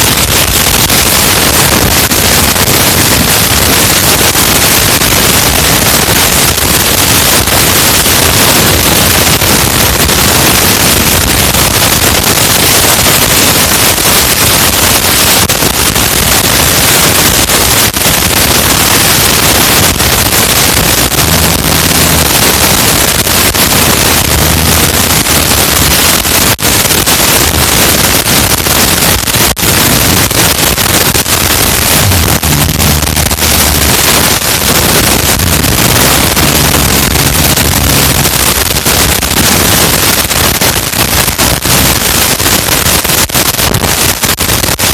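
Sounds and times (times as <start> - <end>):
microphone rustling and crackling: 0.0 - 44.9
low rumbles: 18.3 - 28.1, 29.6 - 42.3.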